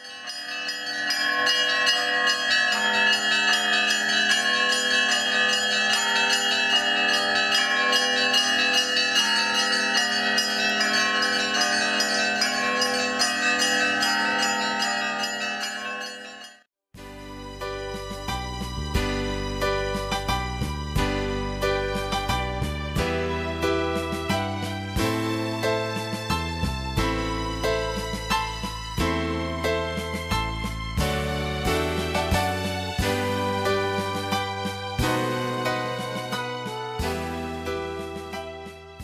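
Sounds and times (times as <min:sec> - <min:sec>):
church bells pealing: 0:00.0 - 0:16.6
music: 0:00.3 - 0:14.7, 0:17.0 - 0:39.0.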